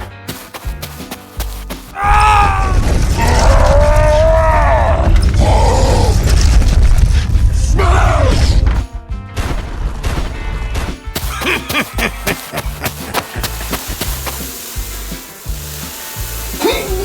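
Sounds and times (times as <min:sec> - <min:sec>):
background music: 0:00.0 - 0:06.1, 0:07.5 - 0:17.0
heavy booming rumble with swoops: 0:04.8 - 0:08.8.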